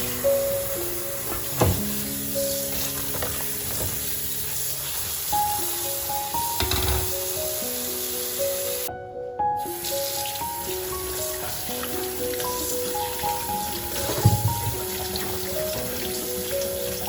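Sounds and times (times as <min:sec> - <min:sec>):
food sizzling in a pan: 0:00.0 - 0:08.9, 0:09.6 - 0:17.0
gentle background music: 0:00.0 - 0:17.0.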